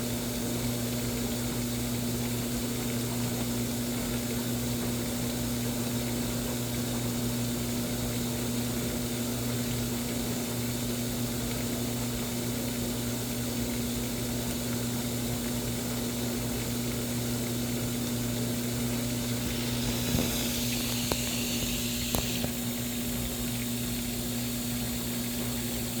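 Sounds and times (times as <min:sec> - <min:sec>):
washing machine running: 0:00.0 - 0:26.0
water noise: 0:17.5 - 0:25.9.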